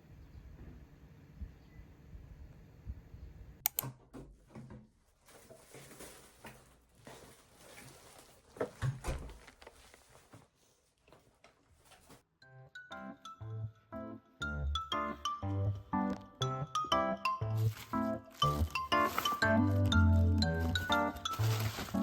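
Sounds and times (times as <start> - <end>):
rustling: 5.0 - 12.2, 17.6 - 22.0.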